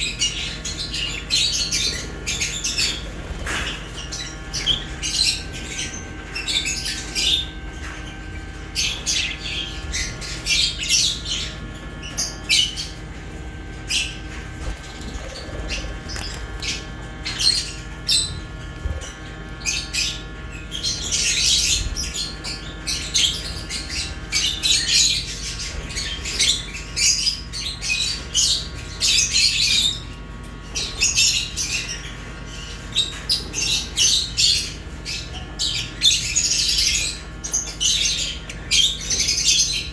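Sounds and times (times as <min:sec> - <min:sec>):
small birds chirping and squawking: 0:00.0 - 0:39.9.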